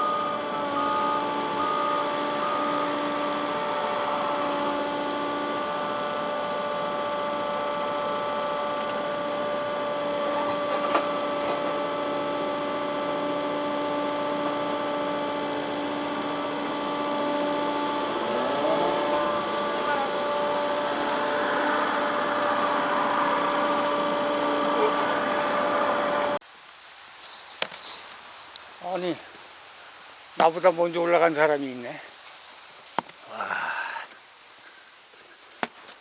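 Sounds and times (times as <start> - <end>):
engine humming: 0.0 - 26.4
rising whine: 0.0 - 26.4.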